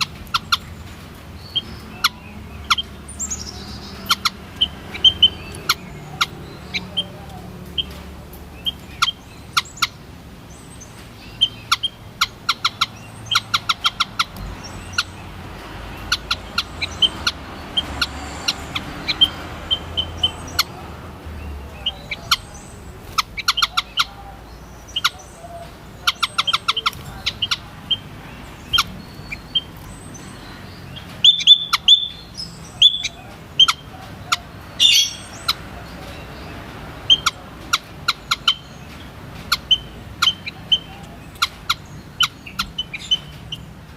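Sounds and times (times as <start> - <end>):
bird calling high-pitched notes: 21.8 - 35.6.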